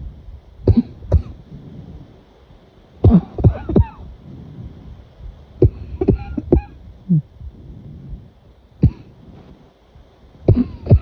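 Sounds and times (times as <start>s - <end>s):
person coughing: 0.7s - 1.4s, 3.0s - 4.1s, 5.6s - 7.3s, 8.8s - 9.1s, 10.5s - 11.0s.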